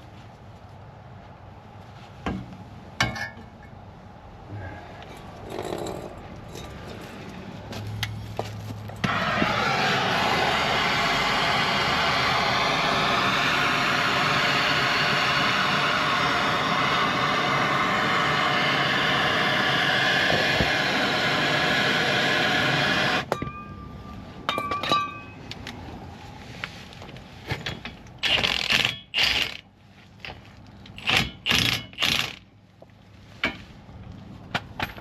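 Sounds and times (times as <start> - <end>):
power tool running: 9.0 - 23.3.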